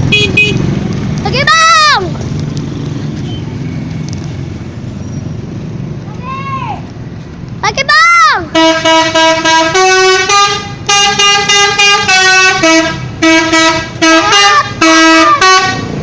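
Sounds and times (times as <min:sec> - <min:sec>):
musical bus air horn: 0:08.5 - 0:16.0.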